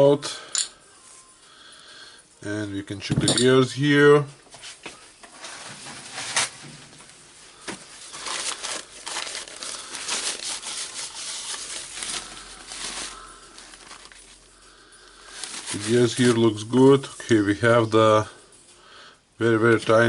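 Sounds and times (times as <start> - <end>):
metal parts clicking and clinking: 0.5 - 0.8
rustling and scraping: 3.0 - 14.5, 15.2 - 18.7.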